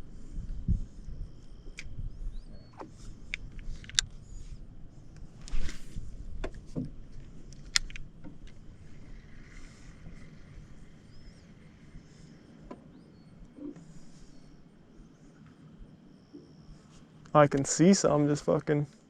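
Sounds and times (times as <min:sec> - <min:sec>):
knocks and clicks inside canoe: 0:06.3 - 0:10.2.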